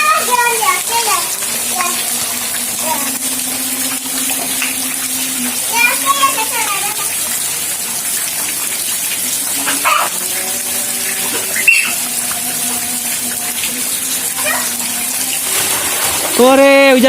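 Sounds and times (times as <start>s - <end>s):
faint children's voices: 0.0s - 3.2s, 5.4s - 8.2s, 9.3s - 10.2s, 13.8s - 15.2s
heavy rain pouring: 0.0s - 17.0s.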